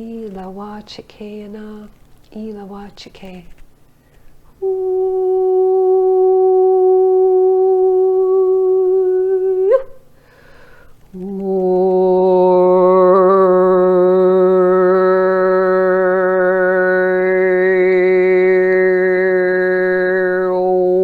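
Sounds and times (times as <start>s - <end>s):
breath: 4.0s - 4.4s, 10.1s - 11.0s
woman singing long held notes: 4.6s - 10.0s, 11.1s - 21.0s.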